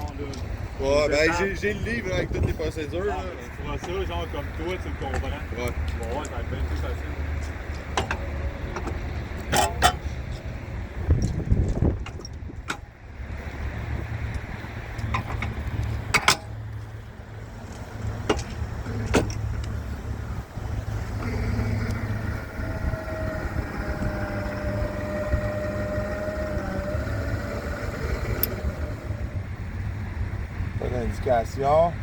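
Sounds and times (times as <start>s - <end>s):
low steady rumble: 0.0s - 32.0s
switch machine motor whine: 21.0s - 29.3s.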